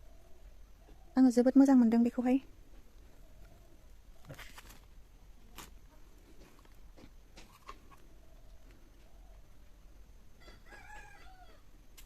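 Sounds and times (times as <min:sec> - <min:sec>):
rooster crowing: 0:10.4 - 0:11.7.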